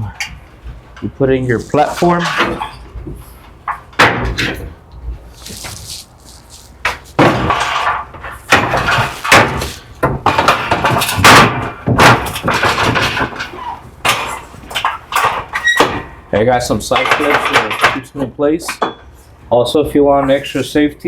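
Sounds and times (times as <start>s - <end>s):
metal clanks and knocks: 2.0s - 4.8s, 6.8s - 18.1s.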